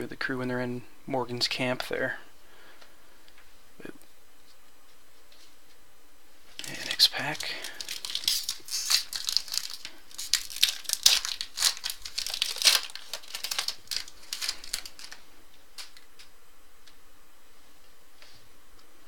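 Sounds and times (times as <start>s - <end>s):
foil wrapper tearing and crinkling: 6.6s - 16.3s.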